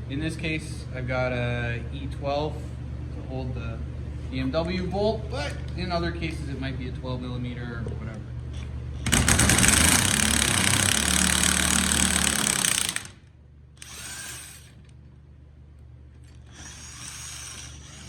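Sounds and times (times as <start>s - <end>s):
power tool running: 9.0s - 13.2s, 13.8s - 14.9s, 16.3s - 18.0s.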